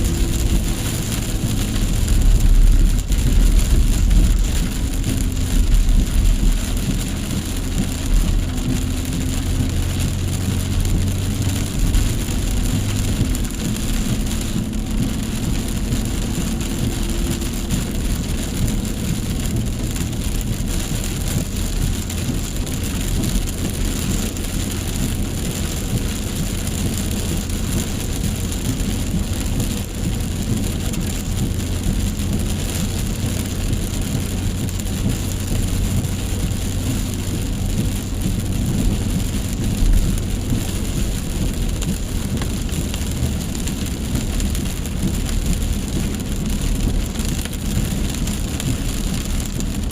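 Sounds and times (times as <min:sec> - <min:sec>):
heavy rain: 0:00.0 - 0:49.9
low steady rumble: 0:00.0 - 0:49.9.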